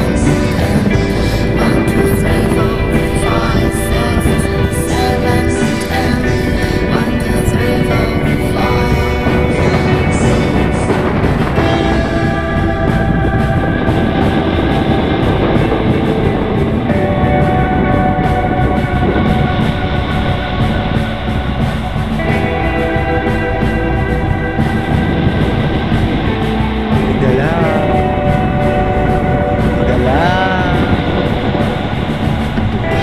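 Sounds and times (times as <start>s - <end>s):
held chords background music: 0.0s - 33.0s
sliding notes: 0.0s - 33.0s.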